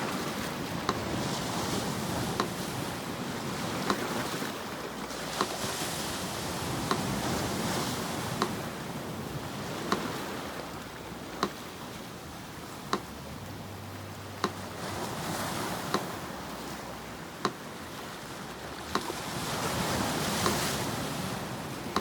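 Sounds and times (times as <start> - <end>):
sea surf washing: 0.0 - 22.0
metronome ticking: 0.8 - 1.2, 6.7 - 8.7, 9.3 - 14.8, 15.6 - 17.8, 18.8 - 19.2, 20.2 - 20.8, 21.8 - 22.0.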